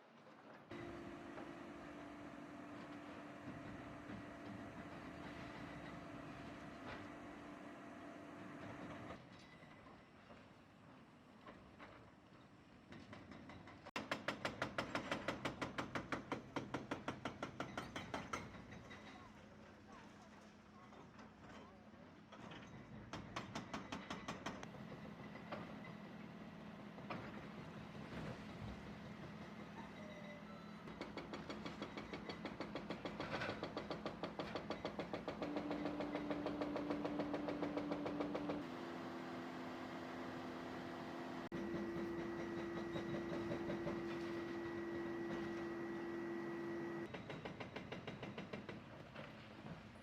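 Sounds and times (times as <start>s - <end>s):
machinery engine hum: 0.7s - 9.2s, 35.2s - 47.1s
jackhammer pounding concrete: 30.8s - 39.0s, 41.5s - 48.9s.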